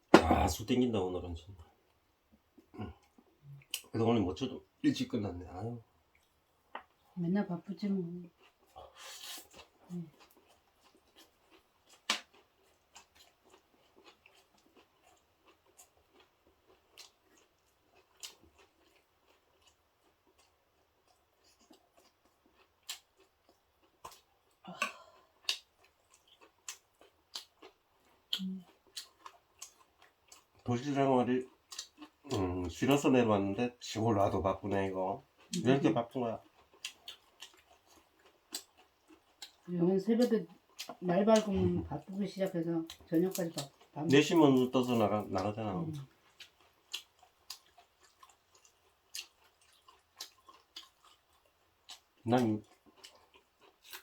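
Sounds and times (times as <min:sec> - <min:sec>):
chewing mouth clicks and smacks: 0:08.4 - 0:30.6, 0:36.4 - 0:39.7, 0:46.0 - 0:54.0.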